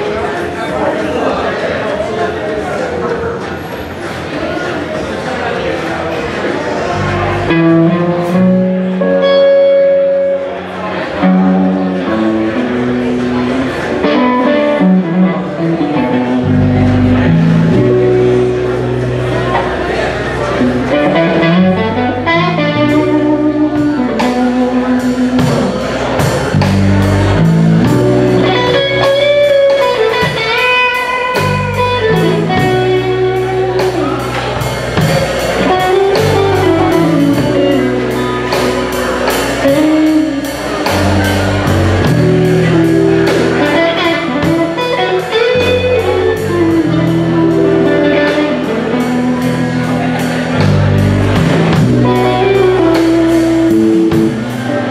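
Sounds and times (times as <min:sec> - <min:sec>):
bass guitar: 0:00.0 - 0:01.8, 0:06.2 - 0:54.9
electric guitar line: 0:00.0 - 0:54.9.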